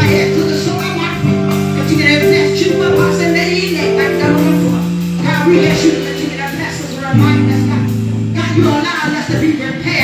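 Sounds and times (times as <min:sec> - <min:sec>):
keyboard chords with beat: 0:00.0 - 0:10.0.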